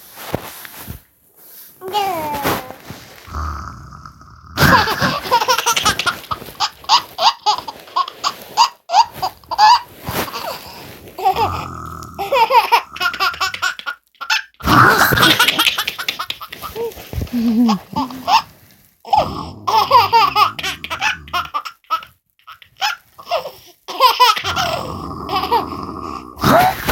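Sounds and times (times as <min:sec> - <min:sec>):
person fake snoring: 0:02.6 - 0:05.3, 0:10.1 - 0:13.2, 0:14.6 - 0:15.4, 0:17.3 - 0:18.3, 0:19.1 - 0:21.4, 0:24.4 - 0:26.9
baby laughing: 0:04.6 - 0:18.5, 0:19.1 - 0:25.7.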